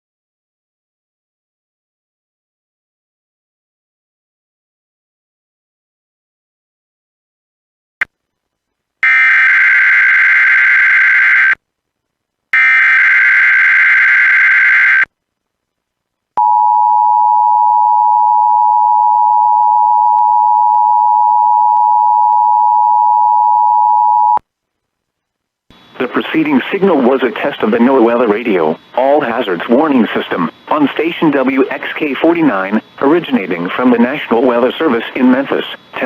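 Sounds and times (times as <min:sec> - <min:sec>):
steady warning alarm tone: 0:12.6 - 0:15.1.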